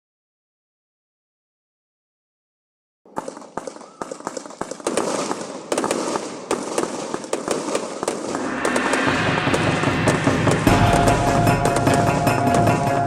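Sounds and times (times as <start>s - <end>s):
fireworks crackling and popping: 3.2s - 9.6s.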